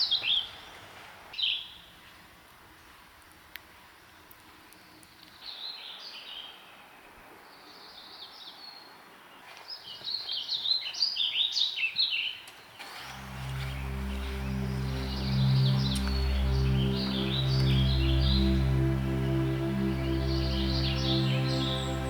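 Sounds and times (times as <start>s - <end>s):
songbird chirping: 3.8s - 22.0s
faint steady hiss: 12.4s - 22.0s.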